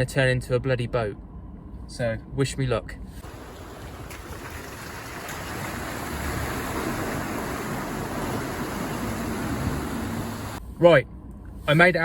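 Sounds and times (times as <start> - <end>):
car engine running: 3.2 - 10.6
water splashing against car: 3.2 - 10.6.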